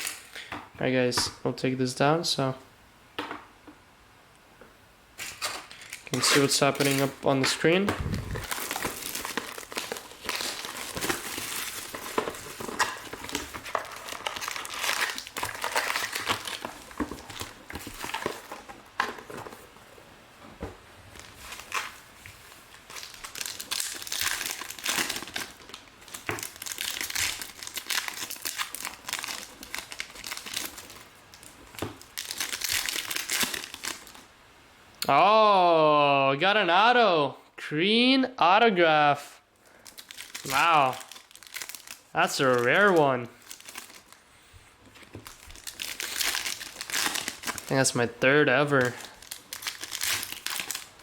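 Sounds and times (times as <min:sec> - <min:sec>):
plastic wrappers crinkling and tearing: 0:00.0 - 0:00.5, 0:05.2 - 0:19.6, 0:21.1 - 0:22.0, 0:22.7 - 0:34.3, 0:39.6 - 0:51.0.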